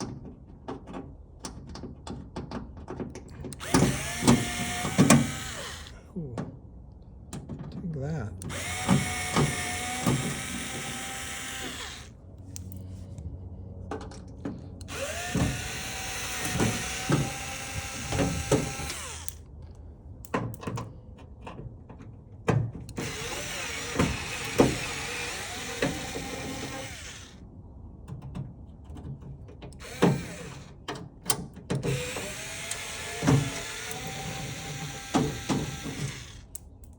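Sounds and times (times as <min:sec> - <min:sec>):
power drill running: 0:03.5 - 0:06.0, 0:08.4 - 0:12.1, 0:14.9 - 0:19.4, 0:22.9 - 0:27.4, 0:29.8 - 0:30.8, 0:31.9 - 0:36.6.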